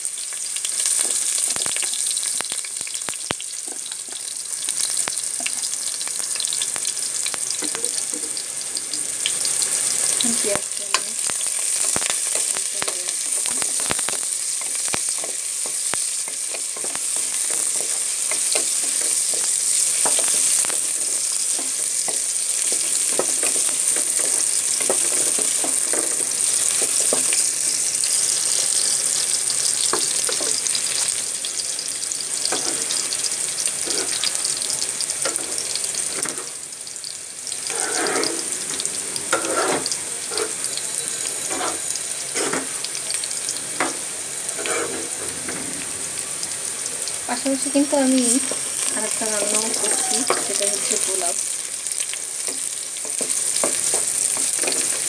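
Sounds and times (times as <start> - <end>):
onion sizzling in a pan: 0.0 - 55.0
scraping while stirring: 33.8 - 34.4, 37.6 - 38.7, 39.3 - 40.7, 41.5 - 42.7, 44.6 - 45.8.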